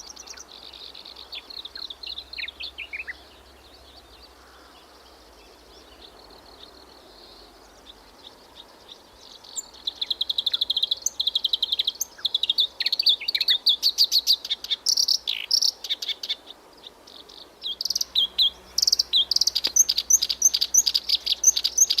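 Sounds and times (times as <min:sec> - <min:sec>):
faint high insect-like hiss: 0:00.0 - 0:22.0
bird chattering song: 0:05.9 - 0:22.0.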